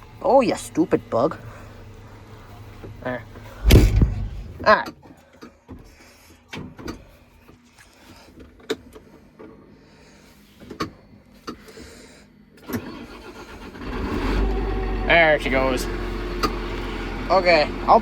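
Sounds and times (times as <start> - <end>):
tractor engine starting: 3.5 - 4.8, 12.6 - 18.0.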